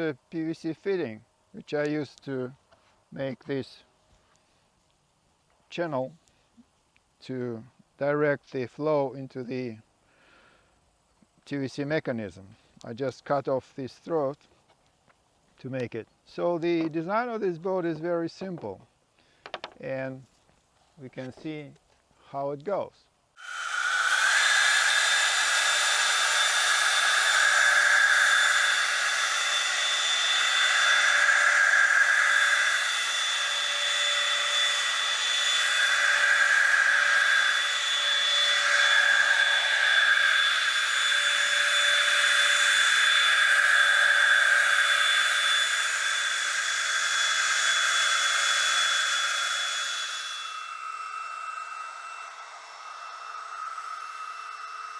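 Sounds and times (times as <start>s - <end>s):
electric ducted fan whine: 23.4s - 54.9s
rushing air hiss: 23.4s - 54.9s.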